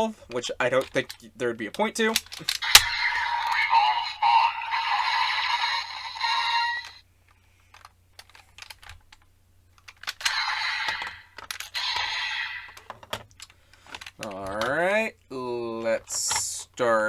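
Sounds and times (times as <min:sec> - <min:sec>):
sharp plastic clicks: 0:00.3 - 0:03.6, 0:07.6 - 0:14.8
toy belt electronic sound effects: 0:02.4 - 0:07.0, 0:10.0 - 0:13.0.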